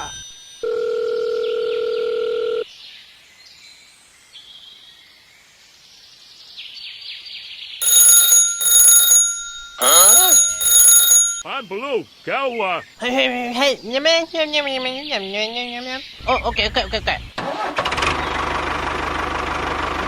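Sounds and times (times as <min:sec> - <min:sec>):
bell-like electronic alarm: 0:00.0 - 0:01.2, 0:07.8 - 0:11.5.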